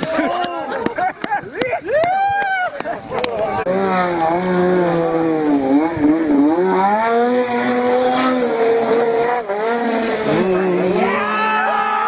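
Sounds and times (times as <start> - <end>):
snowmobile engine revving: 3.4 - 12.0
low snowmobile engine note: 3.6 - 11.6.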